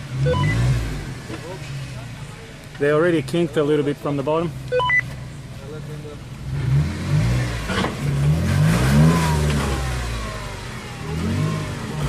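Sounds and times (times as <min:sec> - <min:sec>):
engine revving under load: 0:00.0 - 0:02.2, 0:06.4 - 0:12.0.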